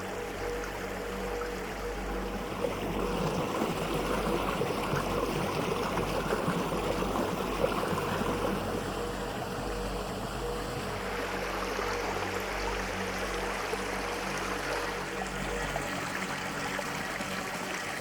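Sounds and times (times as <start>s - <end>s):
flowing water: 0.0s - 18.0s.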